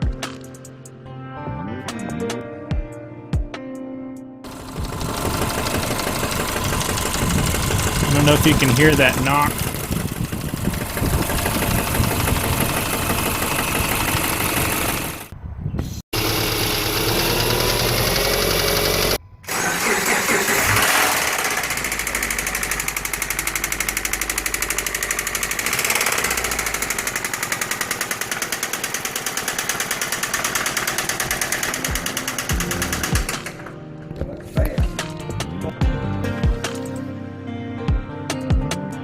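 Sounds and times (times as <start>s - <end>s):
engine running with rapid knock: 4.5s - 15.3s, 16.2s - 33.8s.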